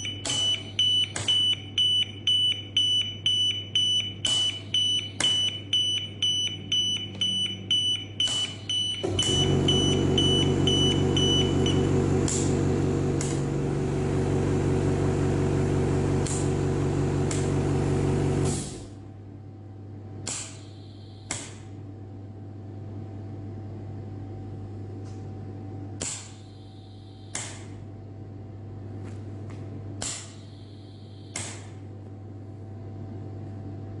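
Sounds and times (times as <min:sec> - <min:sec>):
high alarm beep: 0:00.0 - 0:11.9, 0:20.6 - 0:21.3, 0:26.4 - 0:27.3, 0:30.4 - 0:31.4
loud motor hum: 0:09.0 - 0:18.9.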